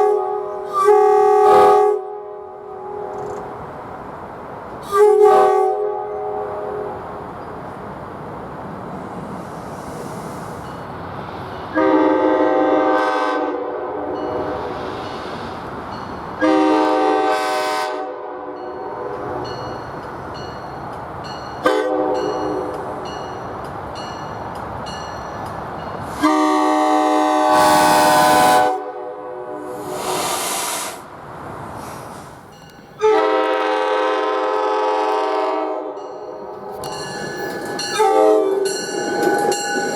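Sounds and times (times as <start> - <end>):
train air horn: 0.0 - 3.3, 4.8 - 7.0, 11.7 - 14.8, 16.4 - 19.7, 21.6 - 22.8, 26.1 - 31.0, 33.0 - 36.0, 37.9 - 38.8
passing train rumble: 0.0 - 39.9.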